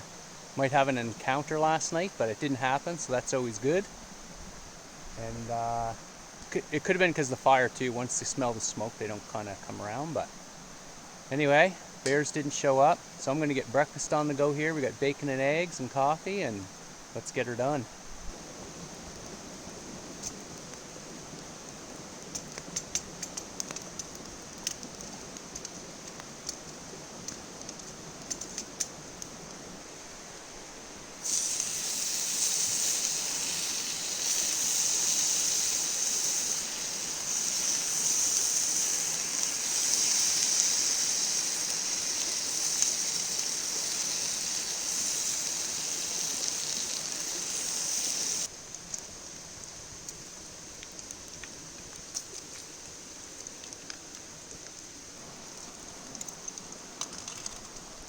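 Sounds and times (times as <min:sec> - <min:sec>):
campfire crackling: 0:00.0 - 0:58.0
bacon sizzling in a pan: 0:31.1 - 0:57.4.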